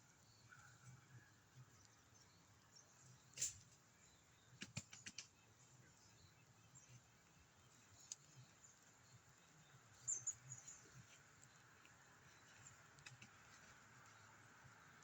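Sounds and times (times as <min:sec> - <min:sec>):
faint clicks: 0:07.9 - 0:08.4, 0:11.1 - 0:14.4.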